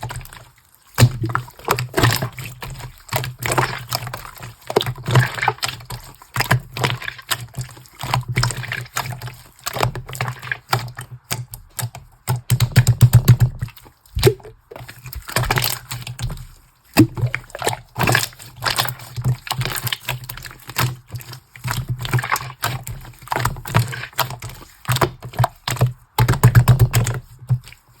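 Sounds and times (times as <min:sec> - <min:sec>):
wet slime clicking and popping: 0:10.6 - 0:15.8, 0:25.0 - 0:27.3
low squelching: 0:14.1 - 0:16.0.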